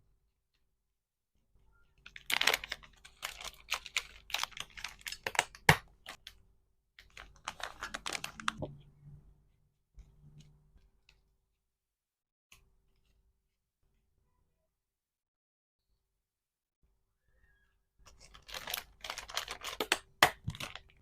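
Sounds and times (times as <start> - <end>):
packaging crinkling and clicking: 2.1 - 6.4, 7.0 - 8.6, 18.1 - 21.0.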